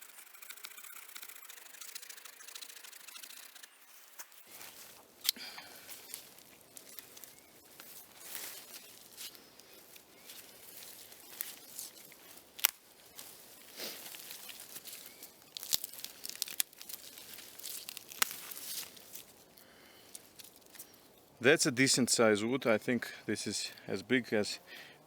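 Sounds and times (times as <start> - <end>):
wood clicking: 0.0 - 4.3, 14.0 - 21.0.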